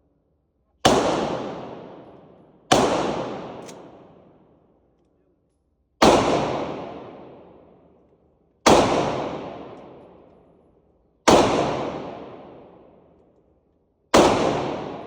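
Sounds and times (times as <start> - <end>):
gunshots with echo: 0.8 - 4.2, 6.0 - 7.5, 8.6 - 10.0, 11.3 - 12.8, 14.1 - 15.0.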